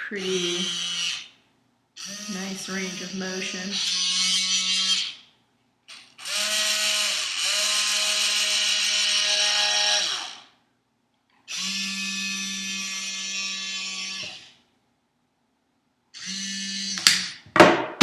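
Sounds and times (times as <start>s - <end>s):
small motors whining: 0.2s - 1.3s, 2.0s - 5.2s, 5.9s - 10.5s, 11.5s - 14.6s, 16.2s - 17.0s.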